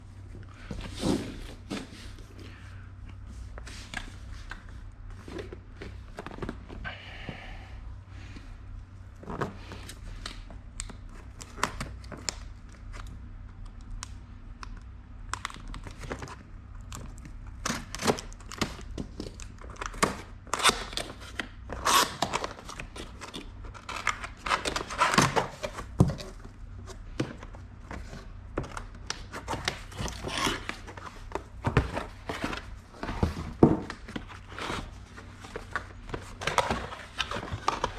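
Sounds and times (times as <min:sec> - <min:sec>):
steady low hum: 0:00.0 - 0:37.9.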